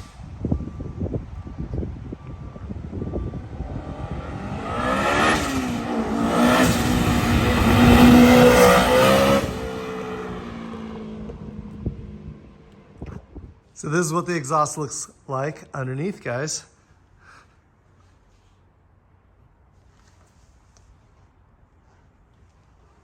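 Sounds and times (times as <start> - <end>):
car accelerating hard past: 3.2 - 11.6.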